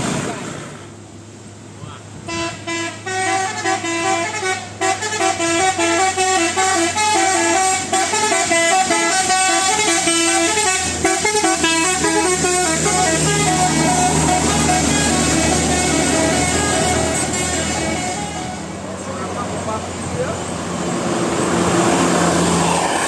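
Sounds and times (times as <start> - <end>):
multi-tone bus horn tune: 2.2 - 19.7.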